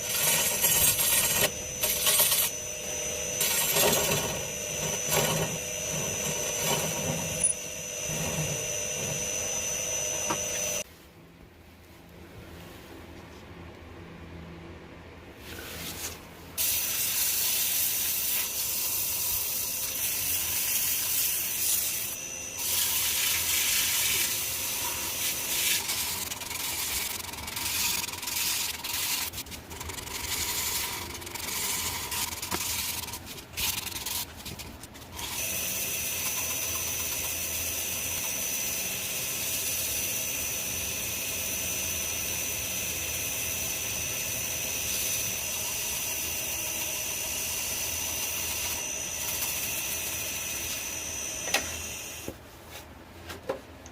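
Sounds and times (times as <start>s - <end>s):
power sander on wood: 0.0s - 10.8s.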